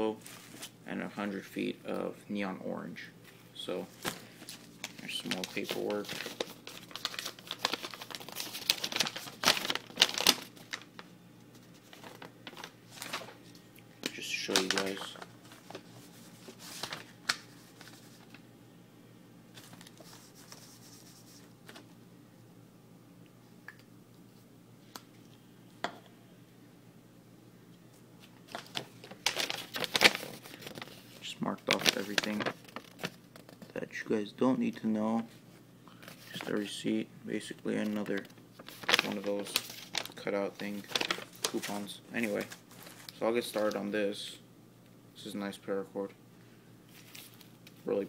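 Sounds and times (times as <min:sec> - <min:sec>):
paper rustling and crinkling: 0:00.2 - 0:00.8, 0:03.8 - 0:18.4, 0:19.5 - 0:21.9, 0:28.2 - 0:33.8, 0:35.3 - 0:36.7, 0:37.7 - 0:43.9, 0:46.9 - 0:48.0.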